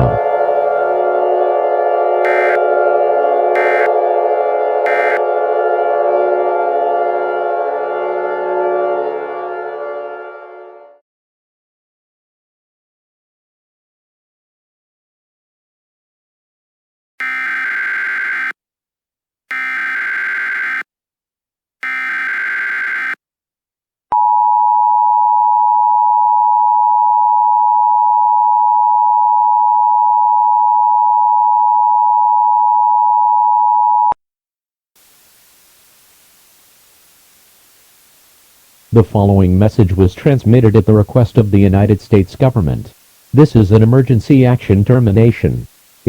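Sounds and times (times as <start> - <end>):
steady attention tone: 0.0 - 10.8, 37.2 - 45.7
buzzy data bursts: 2.3 - 2.6, 3.6 - 3.9, 4.9 - 5.2
faint hiss: 35.0 - 46.0.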